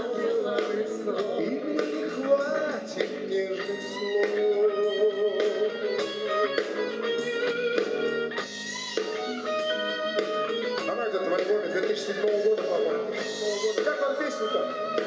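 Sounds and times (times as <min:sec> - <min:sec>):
electric guitar: 0:00.0 - 0:15.0
pop band playing instrumental: 0:00.0 - 0:15.0.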